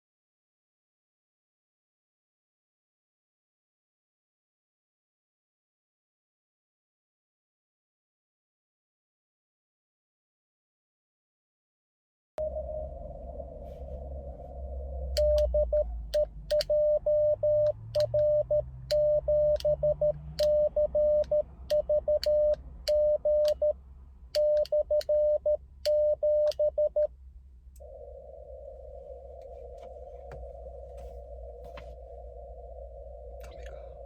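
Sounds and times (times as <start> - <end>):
radio receiver hiss: 12.4 - 17.1, 27.7 - 34.0
keying clicks: 15.2 - 17.0, 17.6 - 23.7
morse code tone: 15.2 - 23.8, 24.4 - 27.1.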